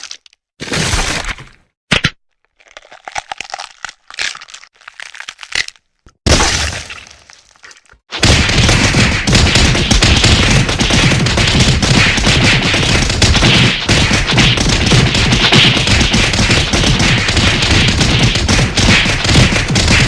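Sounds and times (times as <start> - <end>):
crackling snaps: 7.0 - 20.0
rapid gunfire rattle: 8.1 - 20.0
sudden loud crash: 8.1 - 20.0.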